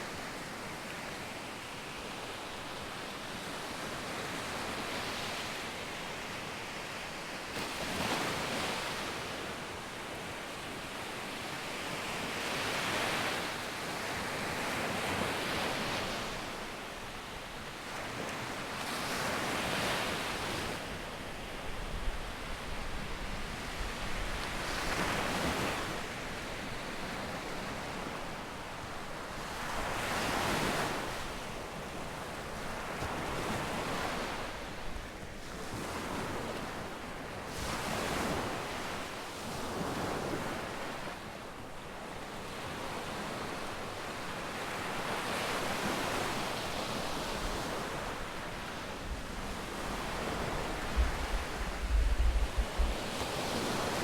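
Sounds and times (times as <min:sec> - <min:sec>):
sea waves breaking on beach: 0:44.3 - 0:54.0.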